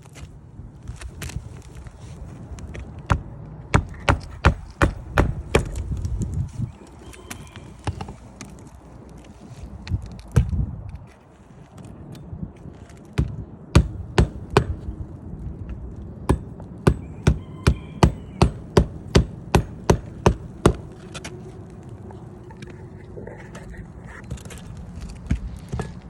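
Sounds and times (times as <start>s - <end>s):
hammer blows on roofing: 3.1s - 5.9s, 13.1s - 15.0s, 16.3s - 21.0s.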